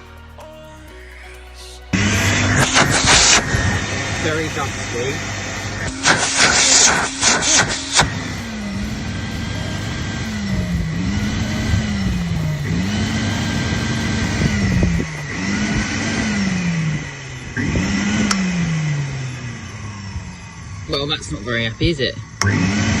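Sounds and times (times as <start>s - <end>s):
vacuum cleaner motor surging: 2.0s - 23.0s.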